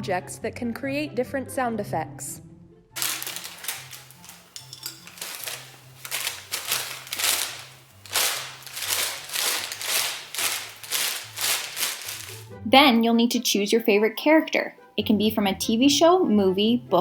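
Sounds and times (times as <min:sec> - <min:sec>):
sharp rattling strokes: 0:03.1 - 0:12.4.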